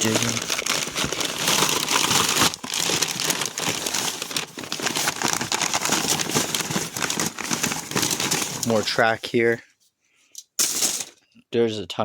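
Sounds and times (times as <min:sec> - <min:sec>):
packing paper crumpling: 0:00.0 - 0:09.5.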